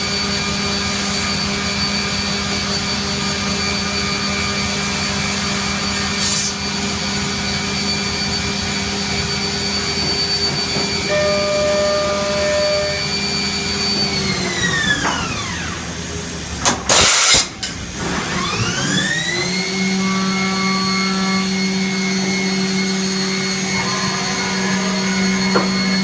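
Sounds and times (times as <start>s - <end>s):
machining center whining: 6.8s - 16.9s, 17.7s - 26.0s
loud burst of machine noise: 7.3s - 26.0s.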